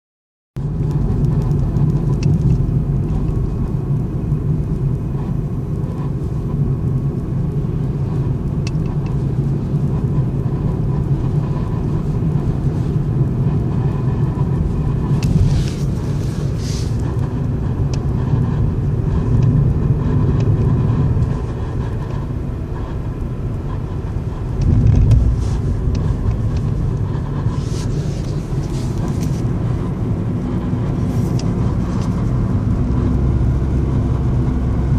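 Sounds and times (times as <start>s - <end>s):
car engine running: 0.6s - 34.9s
high scratching sounds: 24.7s - 29.5s.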